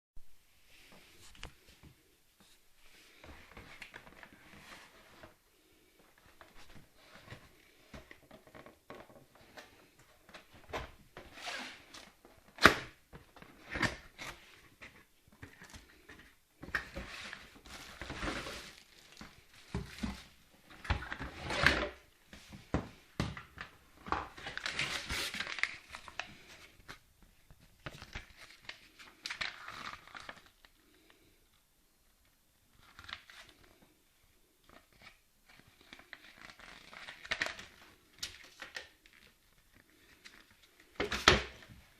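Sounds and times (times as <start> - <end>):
packaging crinkling and tearing: 24.1 - 27.0, 27.8 - 30.8, 34.9 - 41.6.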